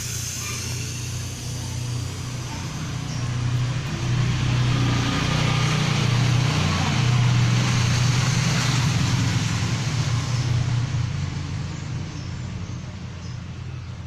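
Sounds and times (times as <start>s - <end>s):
noisy hiss: 0.0s - 12.1s
vehicle engine rumbling: 0.0s - 14.0s.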